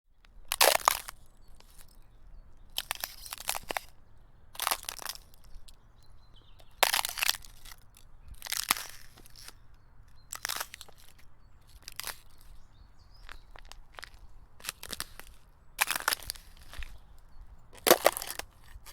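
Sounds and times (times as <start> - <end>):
footsteps crunching in snow: 2.8 - 3.9, 4.6 - 5.6, 6.8 - 7.8, 8.4 - 9.6, 10.3 - 18.9.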